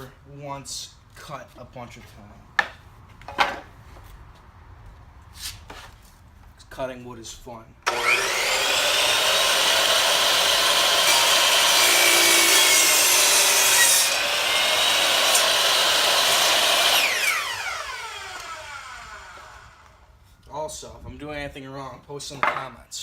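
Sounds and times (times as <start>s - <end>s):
electric saw cutting wood: 7.9s - 20.1s
saw motor winding down: 7.9s - 20.1s.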